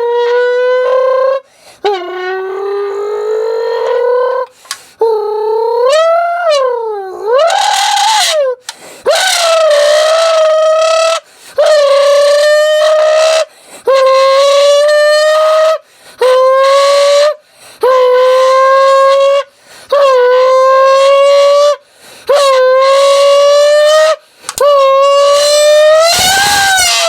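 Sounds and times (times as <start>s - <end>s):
horn-like blasts from soda can: 25.4s - 27.0s.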